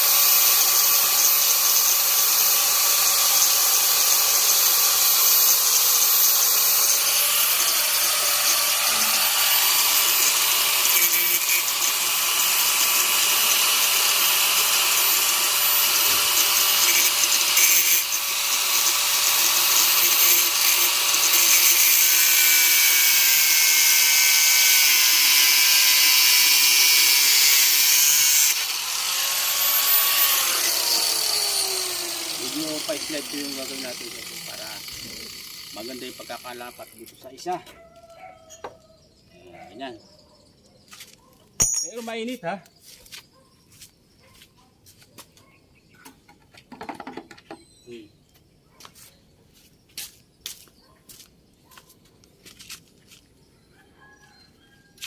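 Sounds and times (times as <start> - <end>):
power tool motor running: 0.0 - 37.2.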